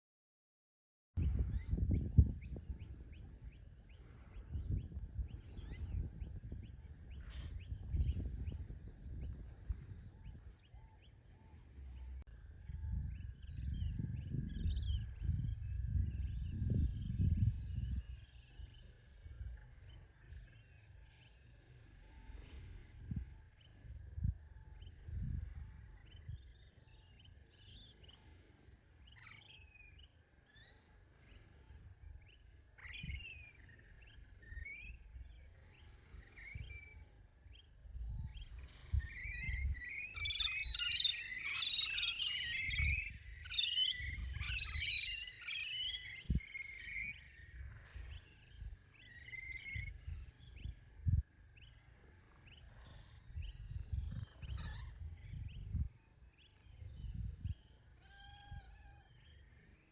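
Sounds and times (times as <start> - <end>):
wind rumble on microphone: 1.2 - 27.1, 31.6 - 41.4, 42.4 - 45.1, 46.0 - 59.8
wild birds chirping: 1.2 - 59.9
birds chattering loudly: 38.4 - 50.6.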